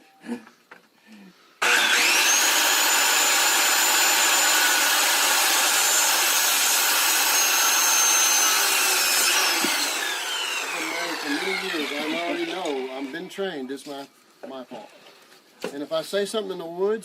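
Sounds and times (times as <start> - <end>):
power saw cutting wood: 1.6 - 13.4.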